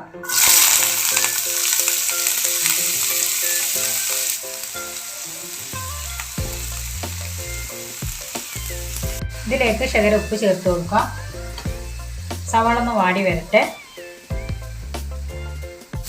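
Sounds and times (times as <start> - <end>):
background music: 0.0 - 16.0
onions sizzling in oil: 0.2 - 16.0
bass line: 5.8 - 7.8, 8.6 - 13.6, 14.3 - 15.8.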